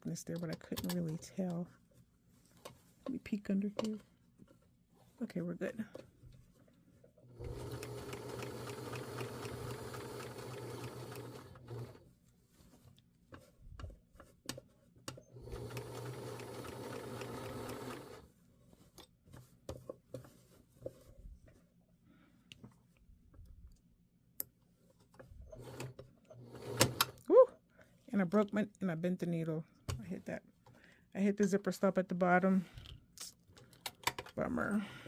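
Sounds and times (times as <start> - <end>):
sewing machine stitching: 7.3 - 12.0, 15.3 - 18.2, 25.5 - 27.2.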